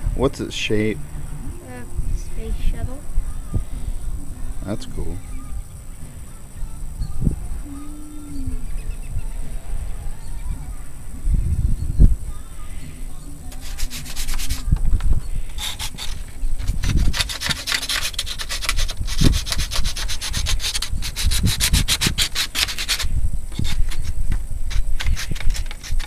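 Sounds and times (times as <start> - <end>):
sandpaper rubbing on wood: 13.4 - 14.7, 15.6 - 26.0.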